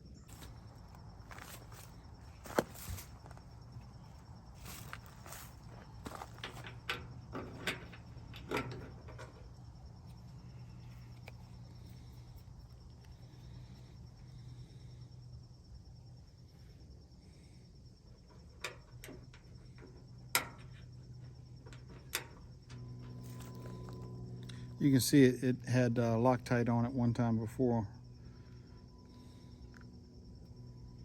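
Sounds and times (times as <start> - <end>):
steady low hum: 0.0 - 31.0
sharp clicks and knocks: 6.1 - 9.6, 18.3 - 20.9.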